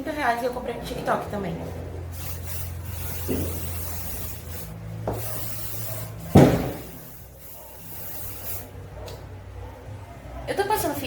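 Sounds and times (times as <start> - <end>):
aerosol spray hissing: 2.1 - 8.7
loud knock: 6.4 - 6.9.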